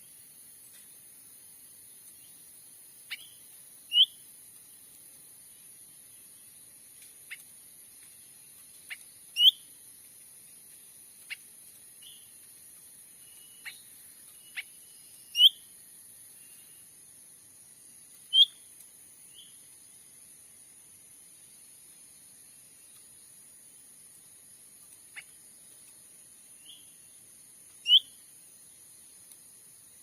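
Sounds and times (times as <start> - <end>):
loud short bird chirps: 3.1 - 4.2, 8.9 - 9.7, 13.2 - 15.7, 18.3 - 18.6, 27.8 - 28.2.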